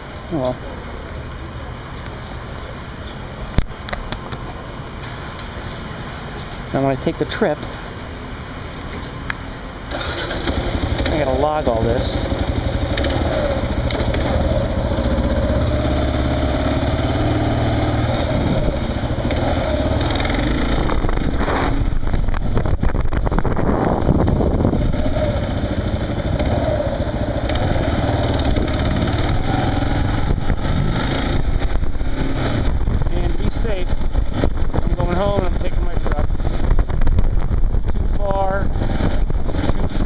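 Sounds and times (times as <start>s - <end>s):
motorcycle engine running: 5.3s - 40.0s.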